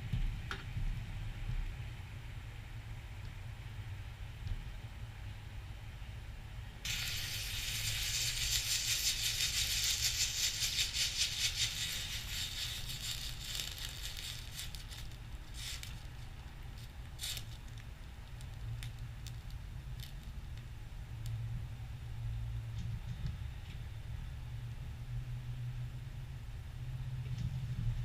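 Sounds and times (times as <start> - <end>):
burning reaction hissing and crackling: 6.8 - 21.4
sharp pops and crackles: 6.9 - 20.8.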